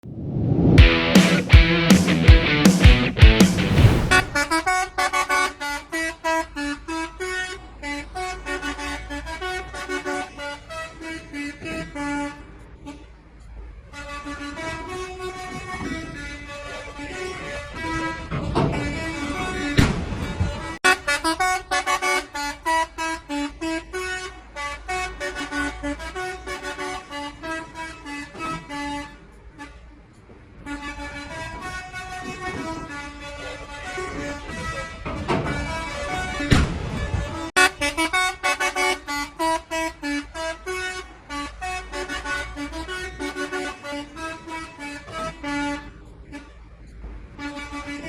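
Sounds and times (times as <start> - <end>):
multi-tone truck horn tune: 4.2 - 48.0
truck horn playing a tune: 20.8 - 29.9, 37.6 - 46.6, 47.4 - 48.0.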